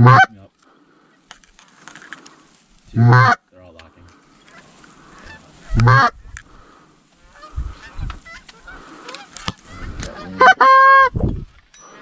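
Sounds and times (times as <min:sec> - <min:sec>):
geese honking: 0:00.0 - 0:00.3, 0:02.2 - 0:03.4, 0:04.1 - 0:11.1.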